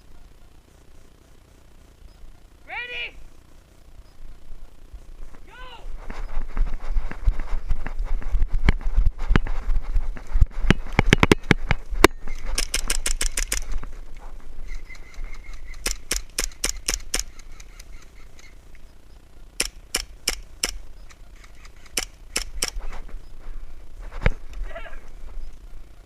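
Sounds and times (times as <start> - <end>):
airsoft guns firing bursts: 12.2 - 13.8, 14.8 - 18.5, 19.6 - 20.8, 21.4 - 22.9.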